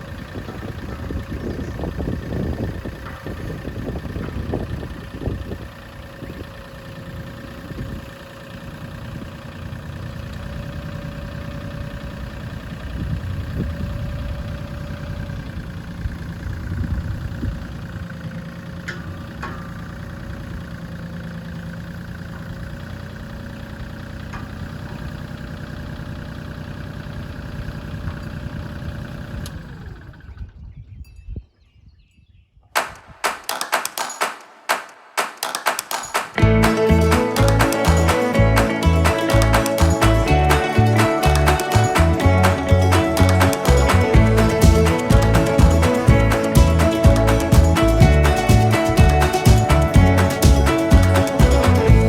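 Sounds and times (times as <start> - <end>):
engine idling: 0.0 - 30.7, 32.8 - 52.0
sharp clicks: 32.8 - 36.4.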